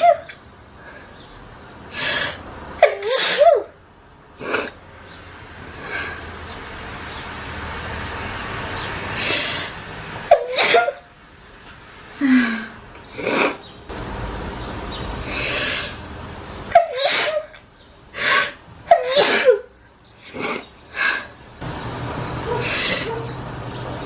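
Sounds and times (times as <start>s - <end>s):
person sneezing: 2.8s - 3.7s, 10.3s - 11.0s, 16.7s - 17.6s, 18.2s - 19.6s
breathy build-up breaths: 20.9s - 21.4s.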